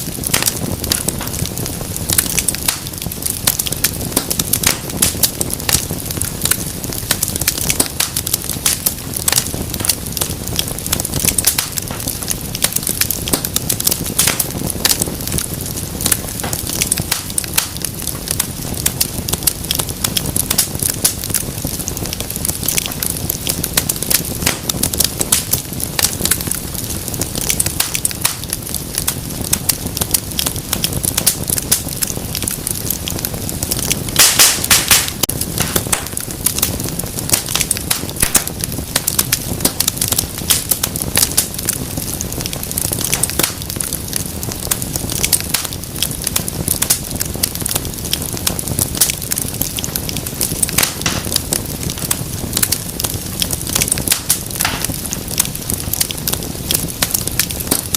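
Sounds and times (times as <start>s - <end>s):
low rumble of flame: 0.0s - 57.9s
wood fire crackling and popping: 0.0s - 57.9s.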